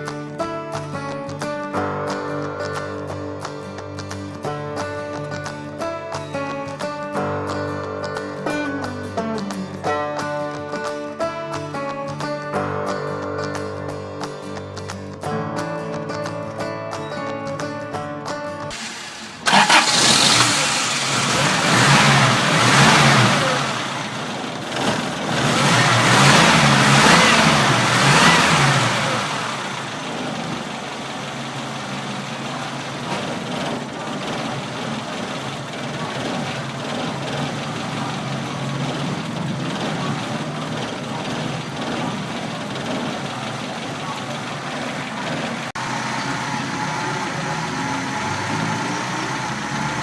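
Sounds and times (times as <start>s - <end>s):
car engine starting: 18.7s - 50.0s
engine idling: 18.7s - 50.0s
engine revving: 18.7s - 50.0s.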